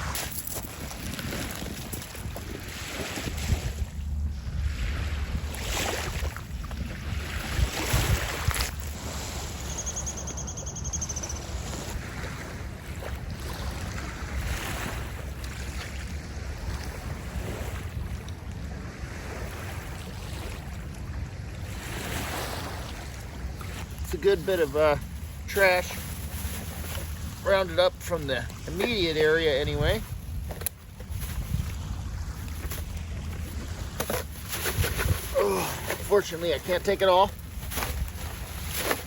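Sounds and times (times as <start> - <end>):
surf washing on shore: 0.0 - 9.9, 11.5 - 39.0
wind buffeting microphone: 0.0 - 15.4, 28.3 - 39.0.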